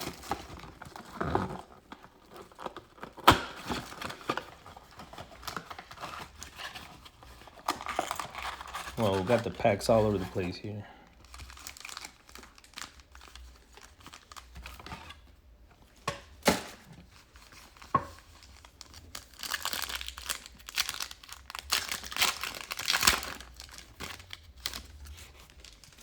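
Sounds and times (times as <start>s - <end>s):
foil wrappers crinkling and tearing: 0.0s - 15.3s, 16.6s - 26.0s.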